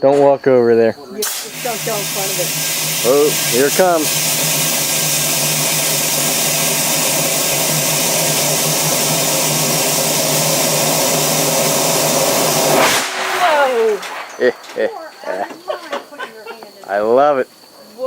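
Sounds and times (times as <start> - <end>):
compressed air blasting: 1.2 - 15.4.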